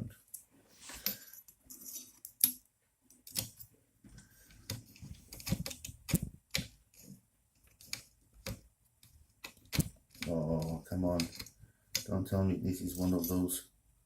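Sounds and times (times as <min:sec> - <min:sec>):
small screws and tools rattling: 0:01.0 - 0:12.2.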